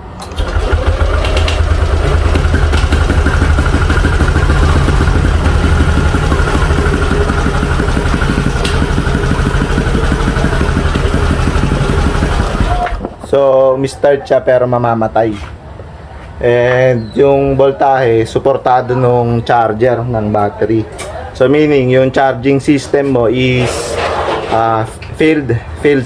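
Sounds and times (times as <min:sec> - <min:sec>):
scooter engine idling: 0:00.3 - 0:13.1.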